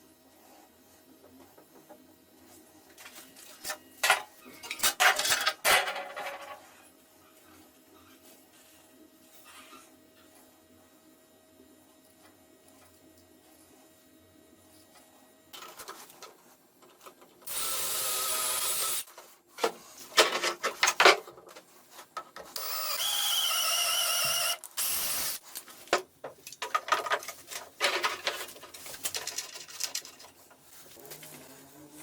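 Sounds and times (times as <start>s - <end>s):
power tool motor whining: 17.5s - 19.1s, 22.6s - 25.4s.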